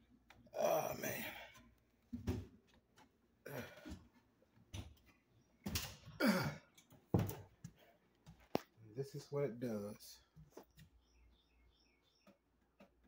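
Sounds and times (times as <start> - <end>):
man groaning: 0.5 - 1.5, 3.4 - 3.9, 6.2 - 6.6
breathy exhalations: 0.6 - 1.7, 3.4 - 4.1, 6.2 - 6.7
man clearing throat: 6.2 - 6.7.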